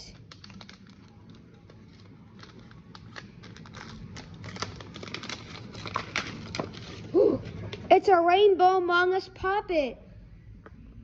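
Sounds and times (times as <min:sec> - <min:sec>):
paper and tape crinkling and tearing: 0:00.0 - 0:08.0.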